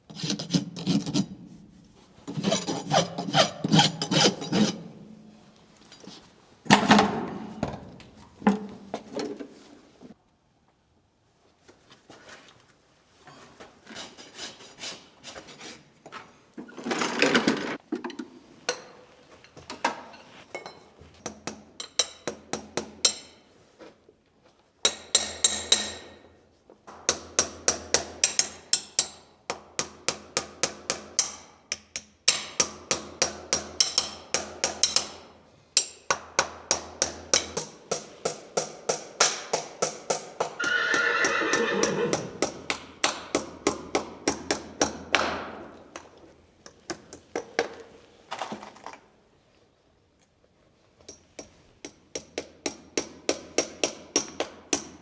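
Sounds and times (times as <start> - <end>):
rasp filing hoof: 0.1 - 1.4, 2.3 - 4.9, 13.9 - 15.8.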